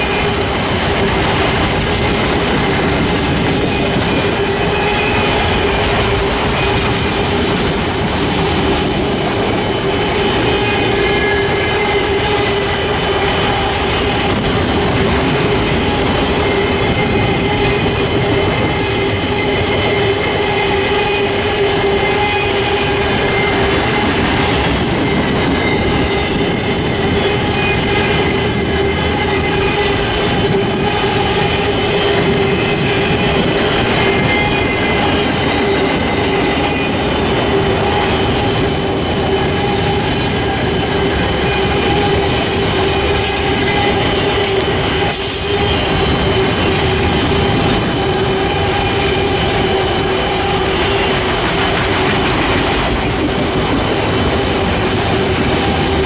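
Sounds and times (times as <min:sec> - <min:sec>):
train wheels rumbling on rail: 0:00.0 - 0:56.0
wheel squeal: 0:02.0 - 0:07.7, 0:16.4 - 0:52.8.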